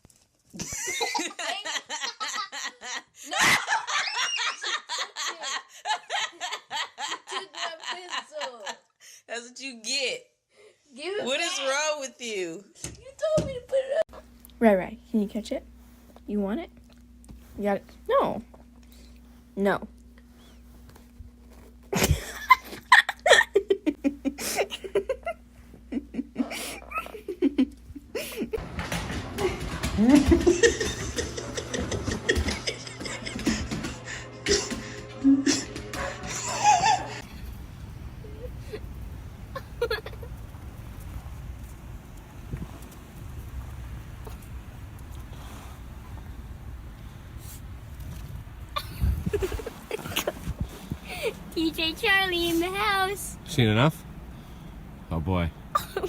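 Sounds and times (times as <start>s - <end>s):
person laughing hard: 0.6s - 8.7s, 22.0s - 28.6s, 29.4s - 37.2s, 39.6s - 40.3s, 48.8s - 51.4s, 55.8s - 56.0s.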